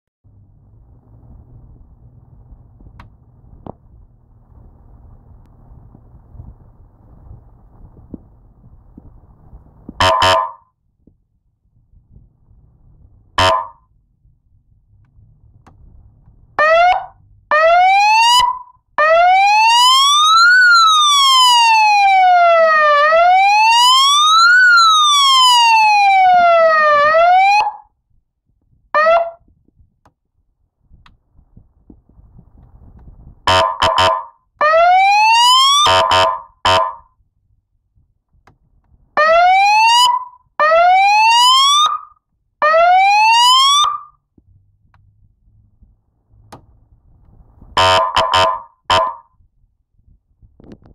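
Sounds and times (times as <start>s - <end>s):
police siren horn blasts: 10.0s - 10.6s, 13.4s - 13.8s, 16.6s - 27.8s, 29.0s - 29.4s, 33.4s - 37.0s, 47.8s - 49.2s
siren rising chirps: 10.0s - 10.6s, 13.4s - 13.8s, 16.6s - 27.8s, 33.5s - 37.0s, 39.2s - 44.2s, 47.8s - 49.2s
siren wail: 10.0s - 10.6s, 13.4s - 13.8s, 16.6s - 27.9s, 29.0s - 29.4s, 33.5s - 37.0s, 39.2s - 44.2s, 47.8s - 49.2s.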